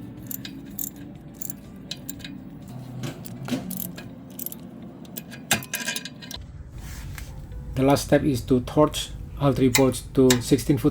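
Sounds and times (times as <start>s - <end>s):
metal tools clinking on bolts: 0.1s - 6.4s.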